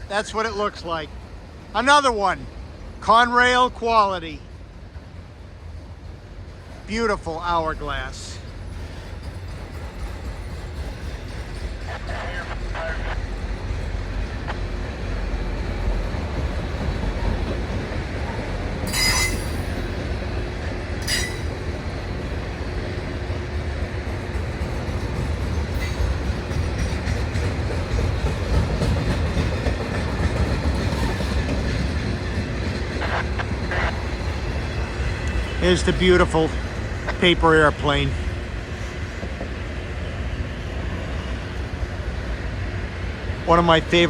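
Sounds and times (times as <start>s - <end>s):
train wheels rumbling on rail: 0.0s - 44.0s
sharp wheel squeals: 18.9s - 19.7s.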